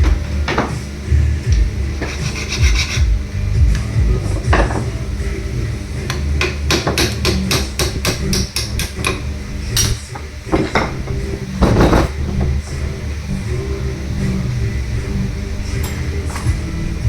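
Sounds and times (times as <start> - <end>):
hammer tapping on metal: 6.1 - 12.5.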